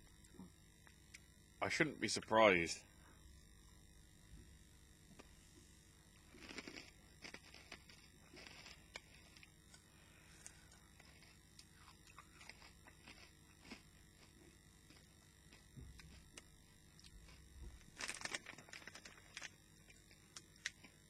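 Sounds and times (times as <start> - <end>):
chewing crunchy food: 6.2 - 21.0.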